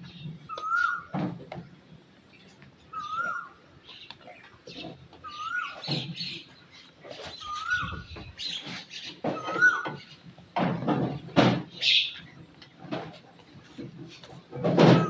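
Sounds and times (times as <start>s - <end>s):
bird whistled call: 0.5s - 1.1s, 2.9s - 3.6s, 7.4s - 8.1s
rustling and knocking: 7.0s - 11.8s, 12.7s - 15.0s.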